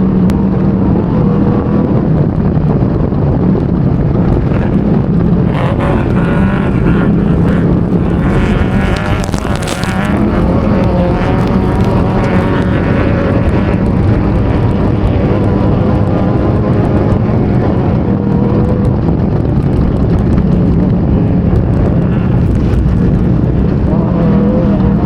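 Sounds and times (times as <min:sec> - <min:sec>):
vehicle engine running hard: 0:00.0 - 0:25.0
wind and road noise: 0:00.0 - 0:25.0
clicks and clatter: 0:04.1 - 0:17.2, 0:18.6 - 0:23.9.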